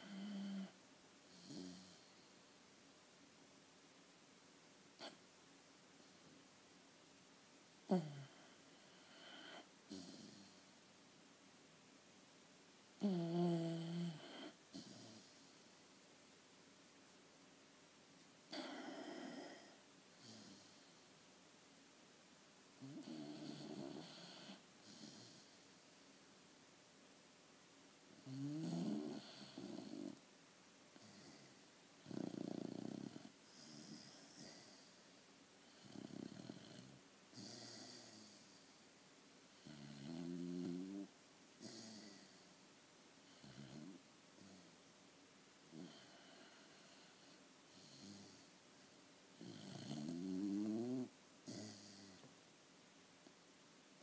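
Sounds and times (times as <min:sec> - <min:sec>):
person snoring: 0:07.9 - 0:10.6, 0:13.0 - 0:15.4, 0:18.5 - 0:20.8, 0:31.0 - 0:34.9, 0:49.4 - 0:52.2.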